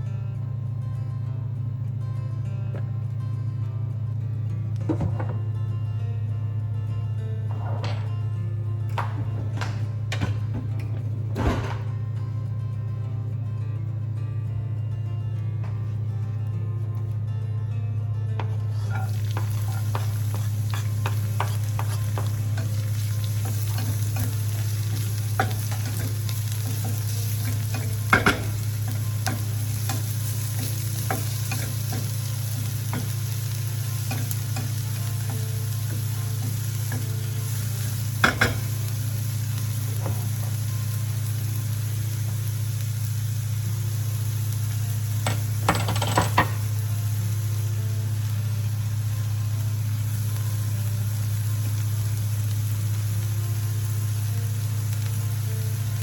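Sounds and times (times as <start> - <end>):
utensil knocking against pan: 18.4 - 30.0, 38.2 - 38.7
food sizzling in a pan: 18.4 - 56.0.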